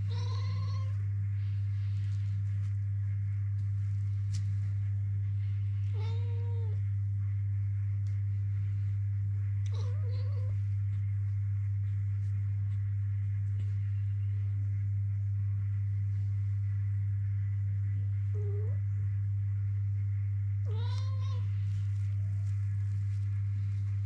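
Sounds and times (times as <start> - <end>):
cat meowing: 0.0 - 1.0, 5.9 - 6.8, 9.7 - 10.6, 20.7 - 21.5
low hum: 0.0 - 24.0.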